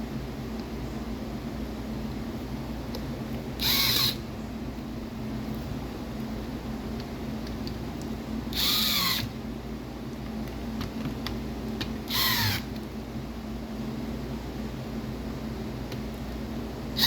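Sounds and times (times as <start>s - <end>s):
low background hum: 0.0s - 17.0s.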